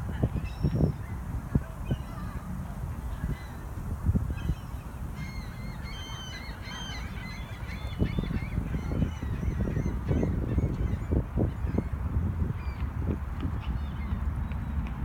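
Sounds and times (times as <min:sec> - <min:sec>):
seagulls calling: 0:04.4 - 0:11.9.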